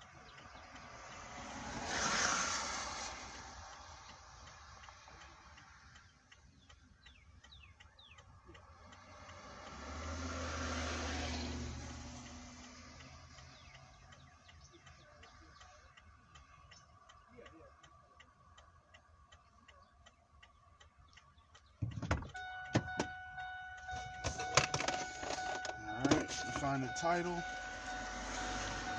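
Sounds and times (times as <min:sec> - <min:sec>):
truck flasher ticking: 0:00.0 - 0:01.8, 0:02.4 - 0:28.9
vehicle passing on road: 0:00.0 - 0:06.2, 0:08.3 - 0:19.6, 0:20.4 - 0:28.9
steady two-note tone: 0:22.3 - 0:28.9.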